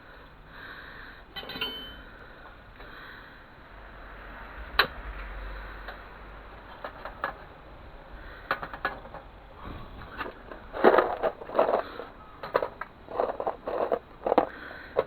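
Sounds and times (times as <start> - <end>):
hard objects clicking and tapping: 6.6 - 7.6, 8.4 - 15.0.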